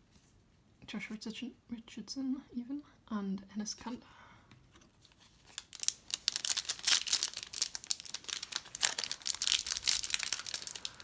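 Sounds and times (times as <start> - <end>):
wrapper crinkling and tearing: 5.2 - 11.0.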